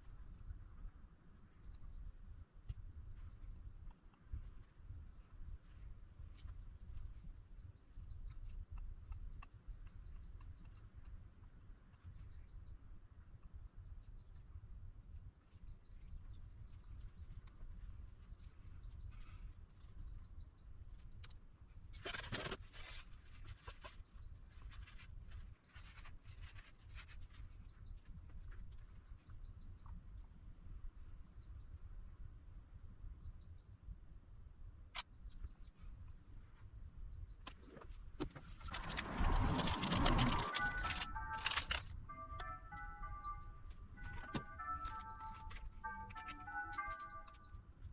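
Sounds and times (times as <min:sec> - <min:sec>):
small bird chirping: 0:07.4 - 0:11.2, 0:40.4 - 0:43.8, 0:44.4 - 0:47.6
rattling clatter: 0:38.3 - 0:41.9.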